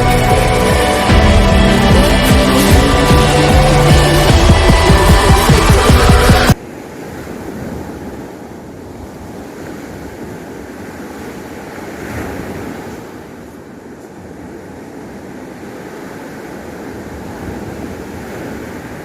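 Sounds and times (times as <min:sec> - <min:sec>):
surf washing onto beach: 0:04.1 - 0:19.0.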